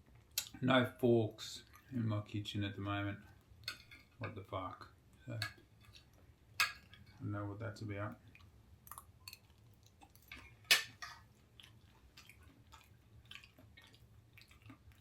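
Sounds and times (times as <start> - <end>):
person chewing food: 2.8 - 4.2, 5.1 - 7.2, 8.2 - 15.0
crunch: 8.4 - 15.0.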